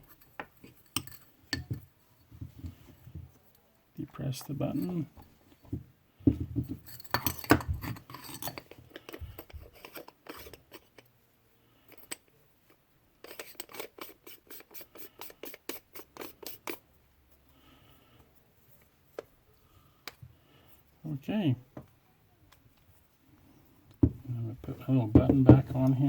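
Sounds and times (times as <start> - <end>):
handling knocks and rattles: 4.1 - 10.0, 24.0 - 26.0.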